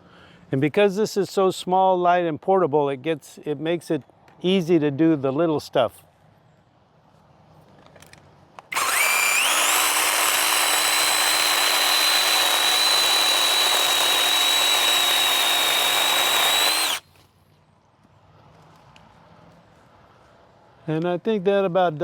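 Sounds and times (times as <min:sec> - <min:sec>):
electric chainsaw motor whine: 0:08.7 - 0:17.0.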